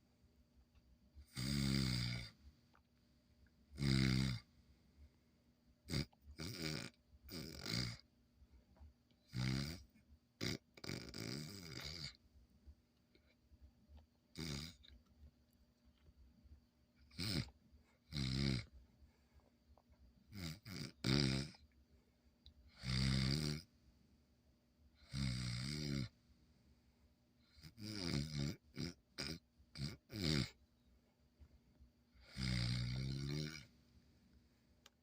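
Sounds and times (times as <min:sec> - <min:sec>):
puppy snoring: 0:01.2 - 0:02.5, 0:03.7 - 0:04.6, 0:05.8 - 0:08.1, 0:09.2 - 0:12.2, 0:14.3 - 0:15.0, 0:17.0 - 0:18.8, 0:20.3 - 0:21.8, 0:22.7 - 0:23.7, 0:25.0 - 0:26.2, 0:27.4 - 0:30.6, 0:32.1 - 0:33.8.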